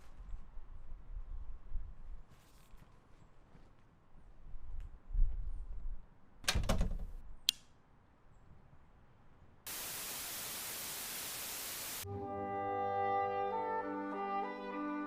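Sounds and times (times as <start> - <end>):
white noise static hiss: 9.7 - 12.0.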